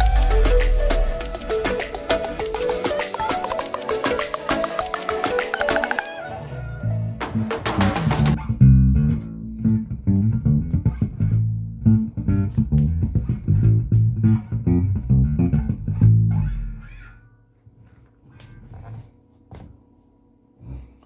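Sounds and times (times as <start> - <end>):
bass guitar plucked low notes: 0.0 - 1.5, 7.9 - 17.2.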